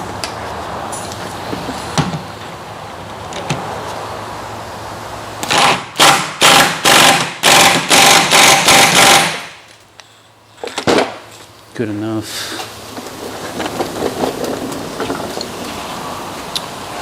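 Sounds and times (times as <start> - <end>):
impact wrench bursts: 5.4 - 9.6.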